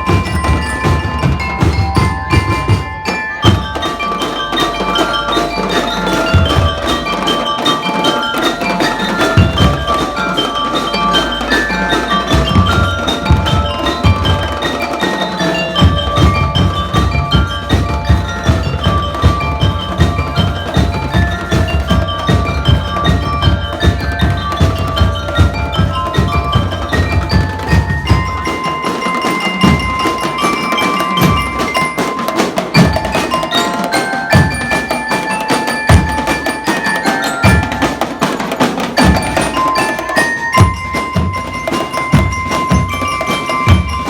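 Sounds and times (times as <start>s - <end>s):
bell lyre melody: 0.0s - 44.0s
marching drums: 0.0s - 44.0s.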